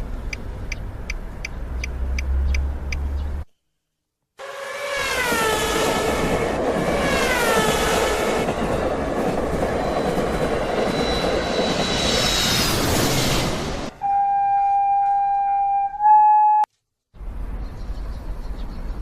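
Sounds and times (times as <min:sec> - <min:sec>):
high thin squeal: 0:10.8 - 0:16.7
falling pitched tone: 0:13.9 - 0:16.7.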